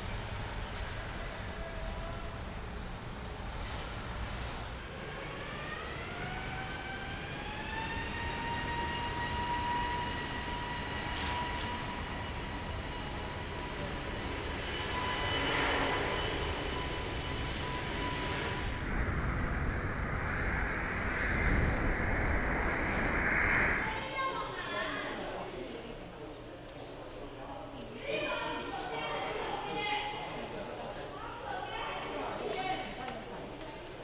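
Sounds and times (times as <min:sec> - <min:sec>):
jet engines spooling up: 0:00.0 - 0:25.5
jet noise rushing: 0:15.4 - 0:24.7.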